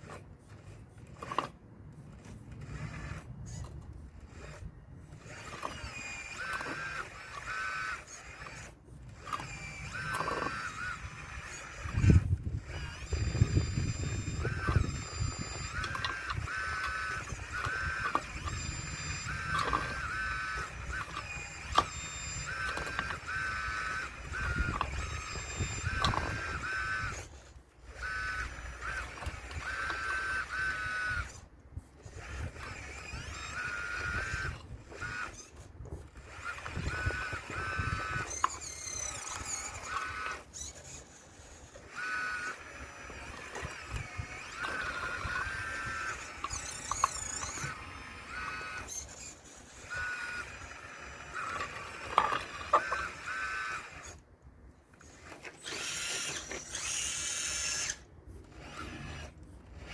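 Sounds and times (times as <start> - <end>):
model excavator motors whining: 0.0 - 59.9.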